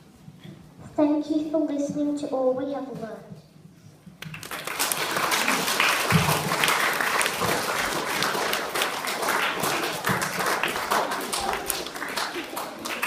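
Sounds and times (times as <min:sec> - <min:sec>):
audience applauding: 0:04.2 - 0:13.0.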